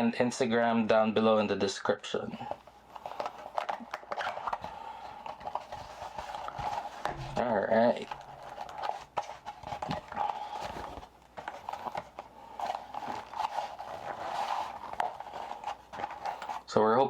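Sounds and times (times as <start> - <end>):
cardboard box being handled: 3.0 - 16.7.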